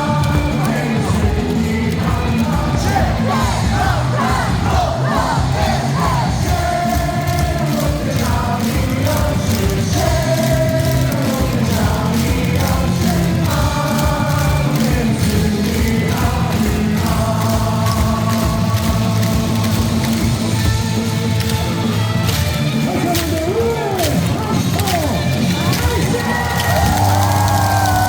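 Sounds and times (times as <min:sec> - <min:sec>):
crowd singing in unison: 0:00.0 - 0:22.0
amplified backing music with beat: 0:00.0 - 0:28.0.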